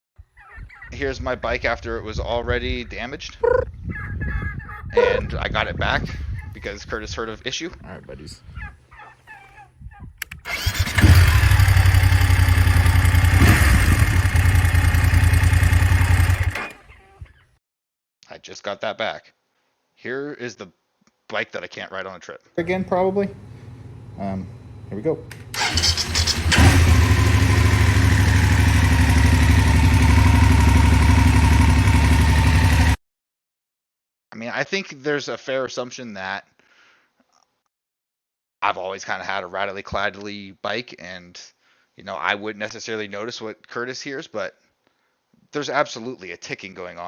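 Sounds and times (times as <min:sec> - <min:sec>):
motorcycle engine running: 0:10.5 - 0:16.8, 0:22.7 - 0:33.0.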